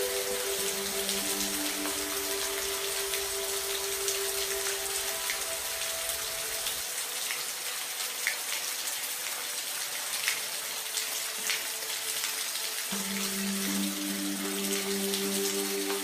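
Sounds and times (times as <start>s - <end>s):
steady rain falling: 0.0s - 16.0s
raindrops ticking: 12.9s - 16.0s.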